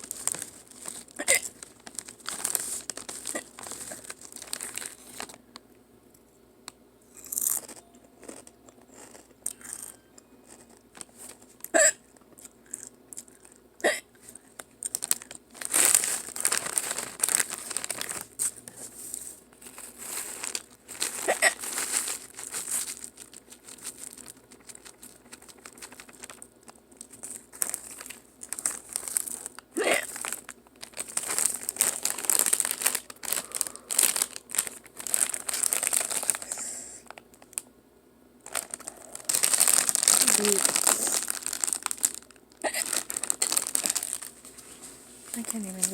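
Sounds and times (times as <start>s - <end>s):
chip bag crinkling: 0.0s - 5.5s, 7.1s - 11.7s, 14.2s - 37.7s, 38.4s - 45.9s
person hiccuping: 1.2s - 1.5s, 11.7s - 12.1s, 13.8s - 14.2s, 21.2s - 21.6s, 29.8s - 30.1s, 42.6s - 42.9s.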